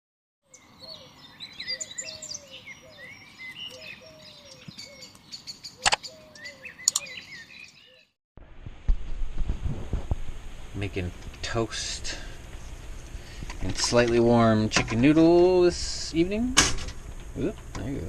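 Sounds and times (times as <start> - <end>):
birds chirping: 0.4 - 8.2.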